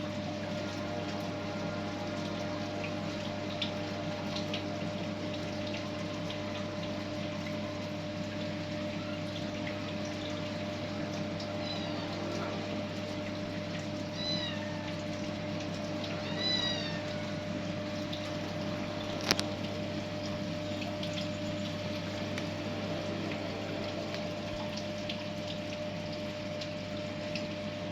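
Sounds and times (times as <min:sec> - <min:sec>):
steady background hum: 0:00.0 - 0:27.9
kitten mewing: 0:14.2 - 0:15.0, 0:16.2 - 0:17.4.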